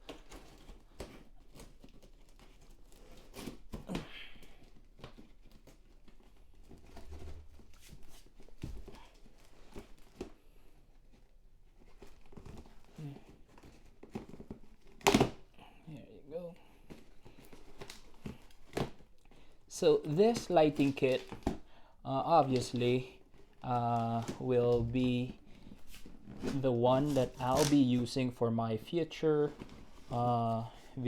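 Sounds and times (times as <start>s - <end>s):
packaging rustling and crinkling: 0.0s - 31.0s
packaging tearing: 20.2s - 21.6s, 26.2s - 27.9s.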